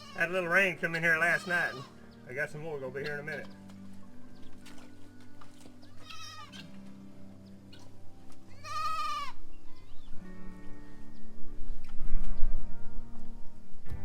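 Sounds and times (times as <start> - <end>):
goat bleating: 0.0 - 2.1, 5.9 - 6.8, 8.5 - 9.4
background music: 0.0 - 14.0.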